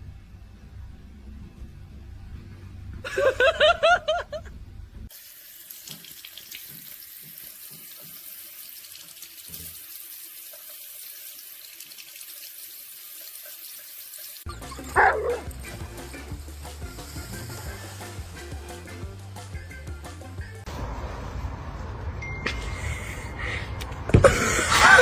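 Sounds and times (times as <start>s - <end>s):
water running: 5.1s - 20.7s
dog yelping: 14.5s - 15.6s.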